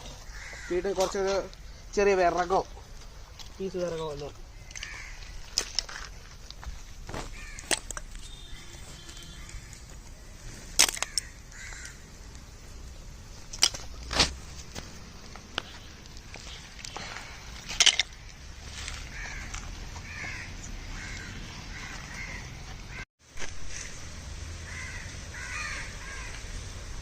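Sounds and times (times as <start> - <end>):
crows cawing: 0.1 - 1.7, 4.5 - 5.7, 7.3 - 9.9, 11.0 - 12.0, 19.0 - 23.0, 24.6 - 26.5.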